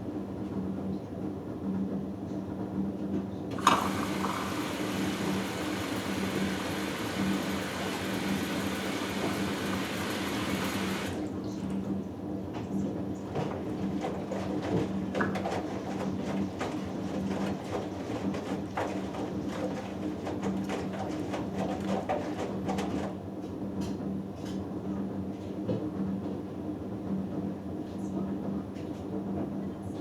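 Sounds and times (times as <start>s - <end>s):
motor hum: 3.5s - 11.3s
water hissing into washing machine: 3.5s - 11.4s
drum splashing and knocking: 3.6s - 11.2s.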